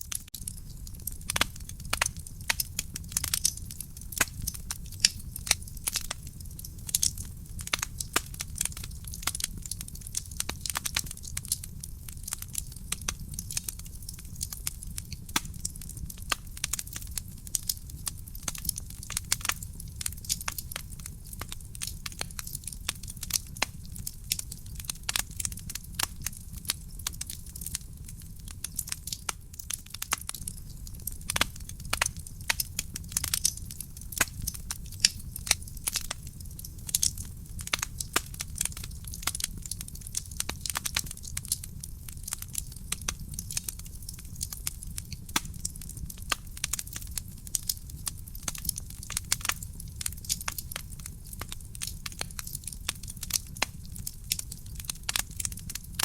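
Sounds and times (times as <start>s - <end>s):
firewood crackling and popping: 0.0s - 56.0s
low rumble of flames: 0.0s - 56.0s.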